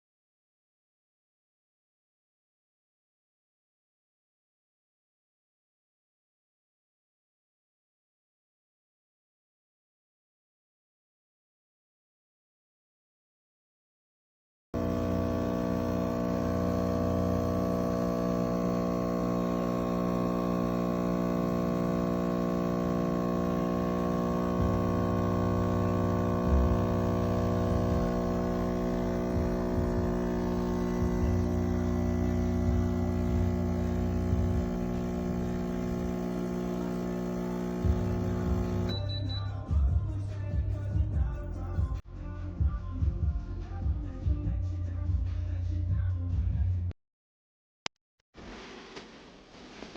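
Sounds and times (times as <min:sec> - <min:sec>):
espresso machine pump humming: 0:14.8 - 0:39.0.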